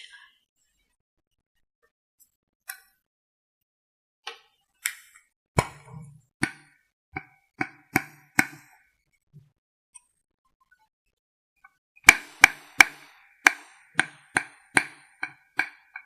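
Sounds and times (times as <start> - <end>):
makeup containers tapping and clicking: 6.4 - 8.7, 12.1 - 16.0.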